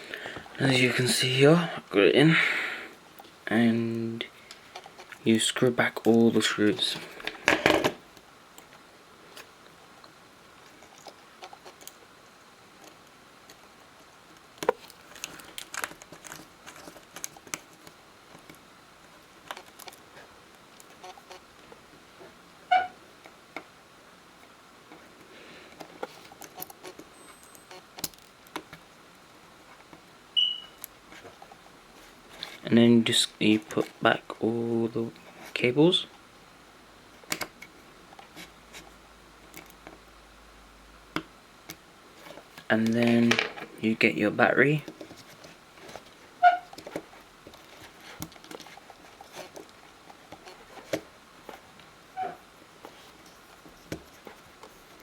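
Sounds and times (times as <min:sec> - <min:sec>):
short pitched blip: 0:30.4 - 0:30.8.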